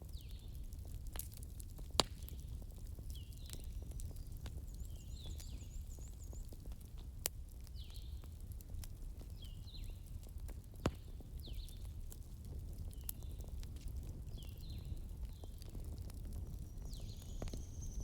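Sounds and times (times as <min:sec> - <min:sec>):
bonfire crackling and popping: 0:00.0 - 0:18.0
small birds chirping: 0:02.2 - 0:07.0, 0:07.6 - 0:08.4, 0:09.2 - 0:10.1, 0:11.0 - 0:12.0, 0:12.8 - 0:13.6, 0:14.2 - 0:18.0.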